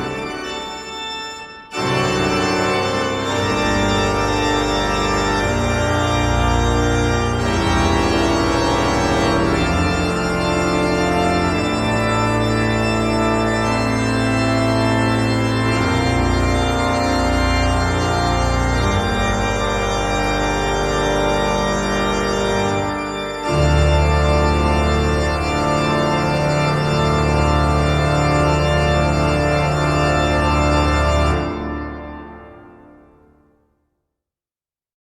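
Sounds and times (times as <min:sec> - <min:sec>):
sustained organ chords: 0:00.0 - 0:33.5.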